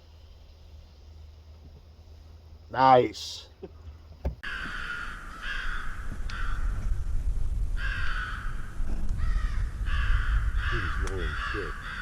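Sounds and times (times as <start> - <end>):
crows cawing: 4.4 - 7.0, 7.8 - 12.0.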